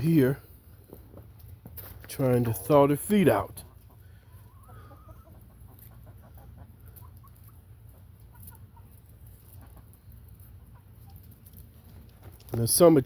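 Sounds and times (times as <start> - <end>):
chickens clucking softly: 3.2 - 11.4.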